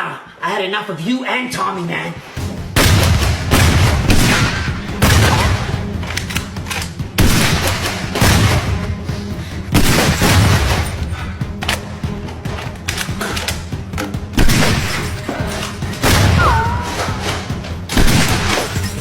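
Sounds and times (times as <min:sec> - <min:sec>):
low musical backing: 0:01.9 - 0:19.0
booming gunshot-like hits: 0:02.7 - 0:06.0, 0:07.2 - 0:09.0, 0:09.7 - 0:11.1, 0:14.4 - 0:15.1, 0:16.0 - 0:16.7, 0:17.9 - 0:18.8.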